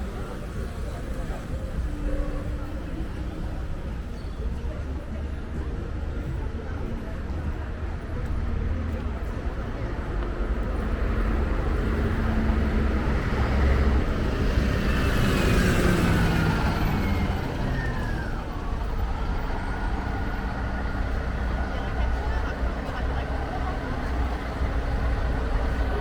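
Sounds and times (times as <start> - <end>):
street traffic noise: 0.0 - 26.0
motor vehicle passing: 11.4 - 26.0.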